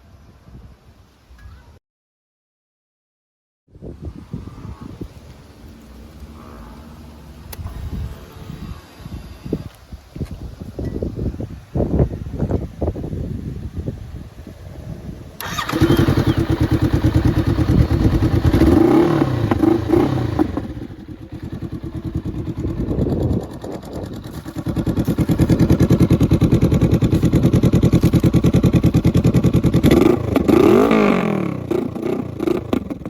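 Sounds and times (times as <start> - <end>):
motorcycle engine revving: 4.3 - 7.7, 15.4 - 33.0
motorcycle engine starting: 15.3 - 33.0.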